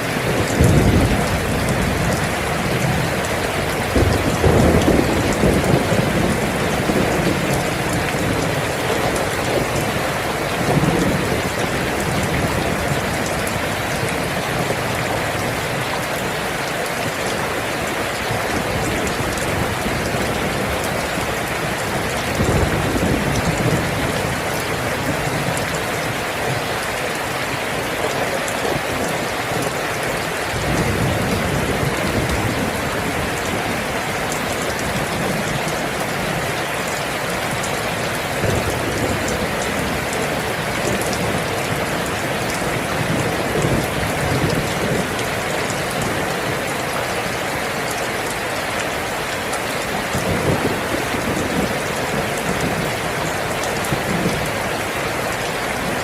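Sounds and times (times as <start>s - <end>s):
steady rain falling: 0.0s - 56.0s
low thunder rumbles: 0.2s - 15.8s, 18.3s - 26.6s, 37.9s - 46.5s.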